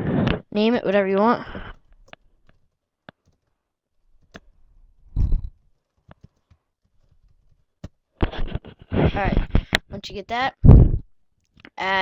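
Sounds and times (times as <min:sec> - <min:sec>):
computer mouse clicks: 0:04.2 - 0:04.5
keyboard clicks: 0:05.3 - 0:08.0.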